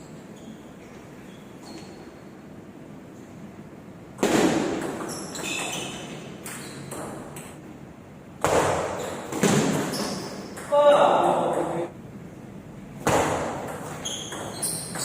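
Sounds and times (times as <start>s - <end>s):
ping pong ball hit and bouncing: 4.2s - 5.7s, 8.4s - 11.8s, 13.0s - 15.0s.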